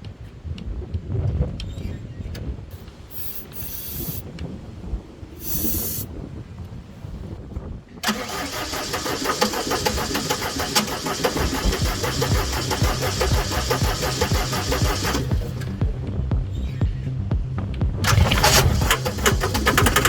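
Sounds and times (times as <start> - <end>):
short hisses: 3.1 - 4.2, 5.4 - 6.1
diesel engine starting and running: 8.0 - 20.0
low rumble: 11.5 - 20.0.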